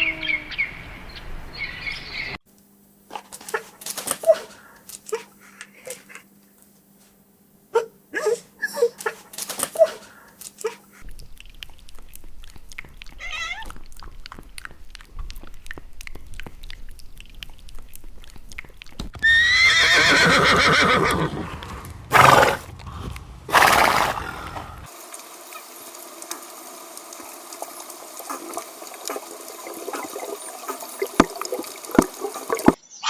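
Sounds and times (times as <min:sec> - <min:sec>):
horse neighing: 0:19.2 - 0:24.9.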